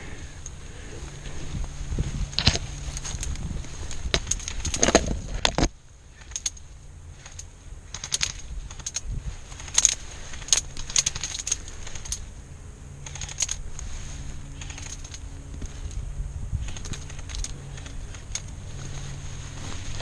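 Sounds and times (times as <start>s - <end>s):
faint steady hum: 0.0s - 20.0s
sharp clicks and crackles: 2.2s - 12.3s, 13.0s - 13.9s, 14.5s - 16.0s, 16.6s - 20.0s.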